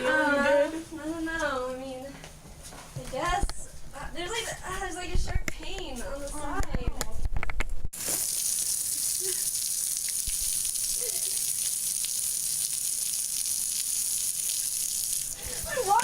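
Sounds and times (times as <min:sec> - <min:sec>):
water gushing: 0:08.0 - 0:16.0.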